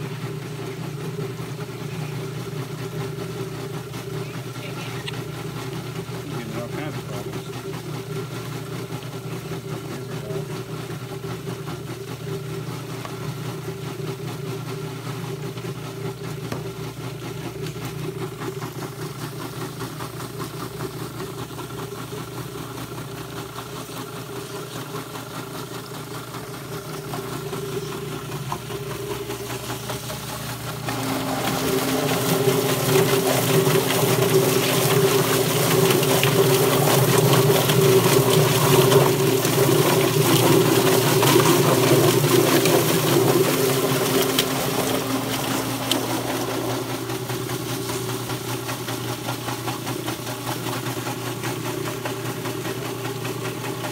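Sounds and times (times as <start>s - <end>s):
motor humming: 0.0s - 53.9s
lower machine tone: 26.3s - 49.7s.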